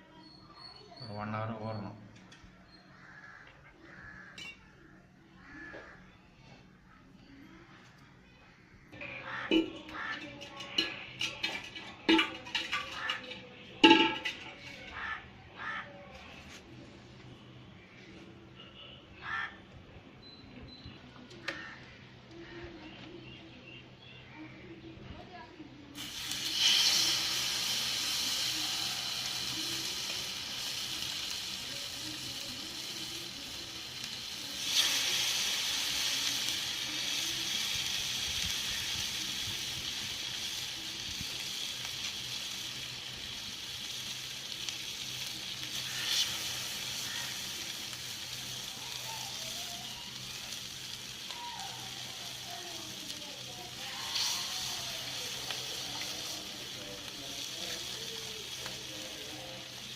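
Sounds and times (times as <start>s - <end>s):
fish frying in hot oil: 26.0s - 59.9s.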